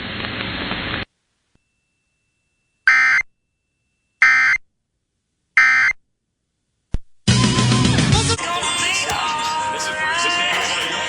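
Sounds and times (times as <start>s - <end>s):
music: 7.5s - 11.0s.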